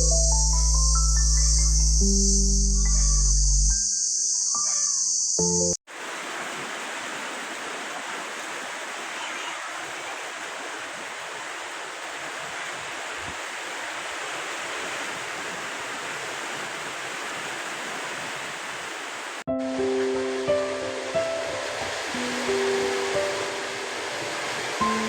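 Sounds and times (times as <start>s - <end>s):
heavy rain: 5.9s - 25.0s.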